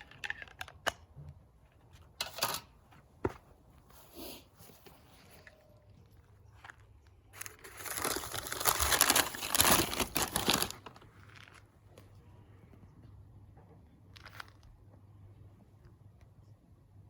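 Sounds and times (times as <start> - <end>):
packaging crinkling: 6.4 - 11.7.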